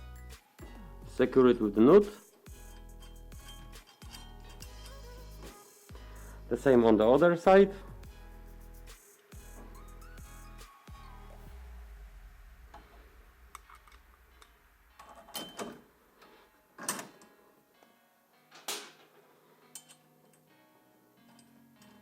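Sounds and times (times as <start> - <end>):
soft background music: 0.0 - 22.0
bolts and nuts rattling: 2.6 - 5.2.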